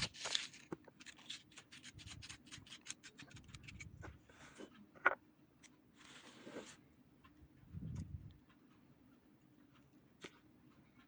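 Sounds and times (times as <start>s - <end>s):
toothpick clicking through onion: 0.0s - 3.7s.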